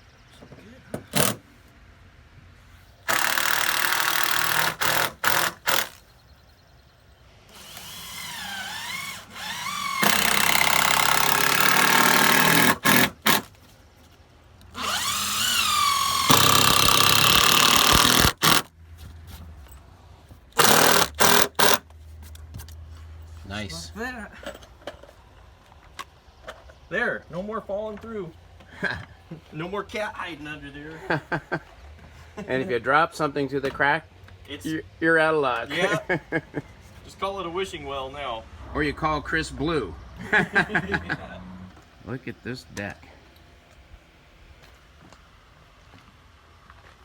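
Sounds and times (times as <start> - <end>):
power tool motor whining: 3.1 - 6.0, 7.5 - 13.5, 14.7 - 18.7, 20.6 - 21.8.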